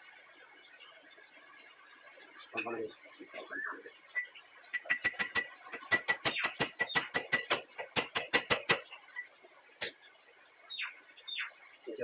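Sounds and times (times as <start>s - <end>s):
hammer tapping on metal: 4.8s - 8.9s.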